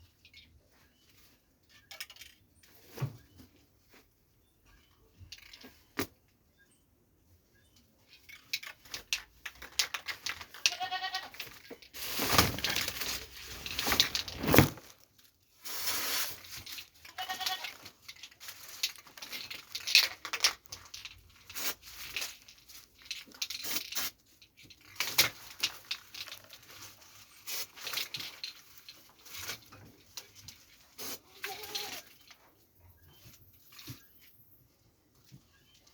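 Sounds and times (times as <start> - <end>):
rustling and scuffling: 9.6 - 35.9
goat bleating: 10.7 - 11.4, 17.1 - 17.7, 31.3 - 32.1.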